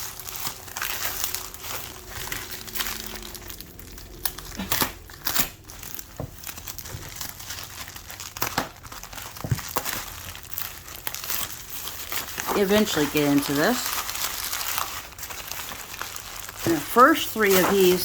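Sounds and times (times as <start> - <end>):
plastic packaging crinkling: 0.0 - 18.0
tape snapping and tearing: 4.1 - 12.9.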